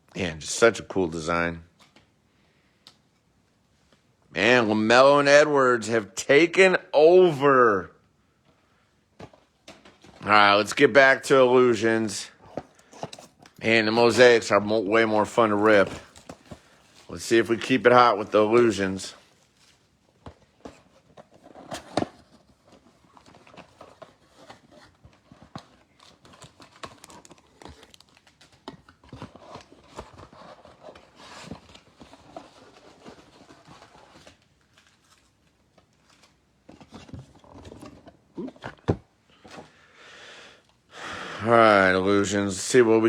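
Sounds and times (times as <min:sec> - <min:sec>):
plastic wrap tearing and crinkling: 0:25.7 - 0:32.0.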